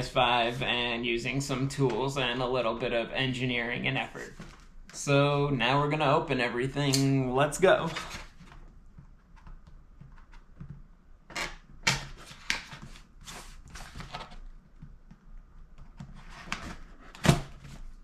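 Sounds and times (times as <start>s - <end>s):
cardboard and plastic rustling: 12.1s - 14.9s.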